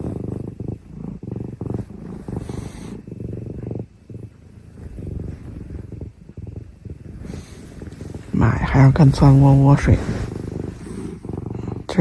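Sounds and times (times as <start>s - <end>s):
cat purring: 0.0s - 12.0s
bedding rustle: 4.5s - 6.0s, 6.9s - 12.0s.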